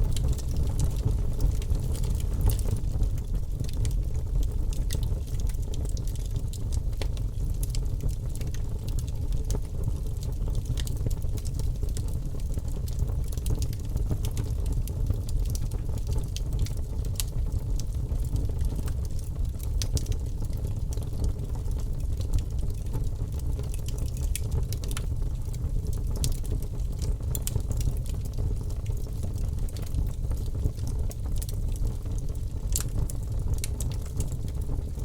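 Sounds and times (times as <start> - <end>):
burning wood crackling: 0.0 - 6.3, 18.2 - 35.0.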